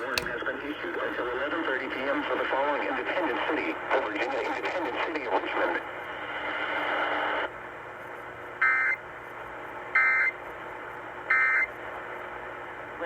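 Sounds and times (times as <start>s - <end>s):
radio hiss: 0.0s - 7.5s.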